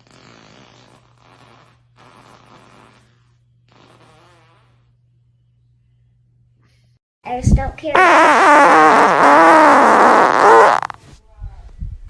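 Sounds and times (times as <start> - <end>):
long breathy farts: 0.0 - 4.9, 8.0 - 11.0.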